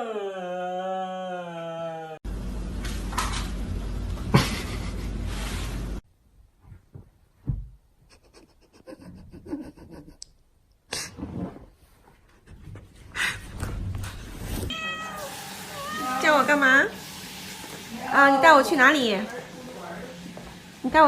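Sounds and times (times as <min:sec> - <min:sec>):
dog howling: 0:00.0 - 0:02.2, 0:14.7 - 0:16.7.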